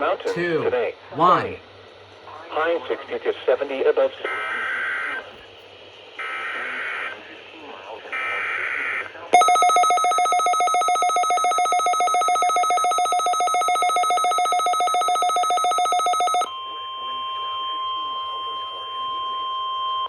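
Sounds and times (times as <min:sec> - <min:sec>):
pulsing alarm tone on radio: 0:09.4 - 0:16.5
quiet steady tone: 0:09.4 - 0:16.5.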